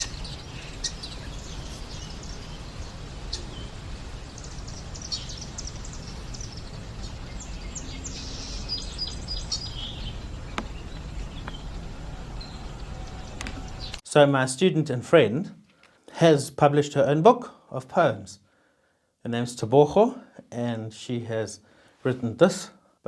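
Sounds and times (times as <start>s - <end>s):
birds chirping: 0.0s - 14.0s
low background rumble: 0.0s - 14.0s.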